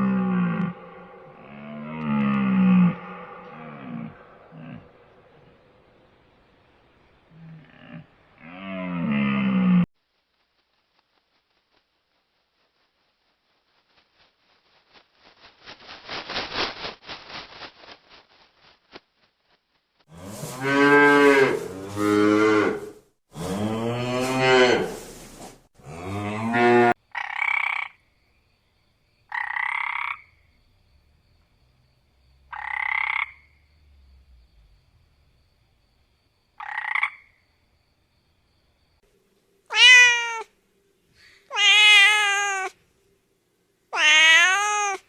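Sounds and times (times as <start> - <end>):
cow mooing: 0.0 - 4.9, 20.1 - 25.0, 25.8 - 27.0
short croaking calls: 32.5 - 33.6, 36.6 - 37.4, 39.7 - 40.5, 41.3 - 42.8, 44.0 - 45.0
rapid rattling animal call: 39.7 - 40.4, 41.5 - 42.7, 43.9 - 45.0.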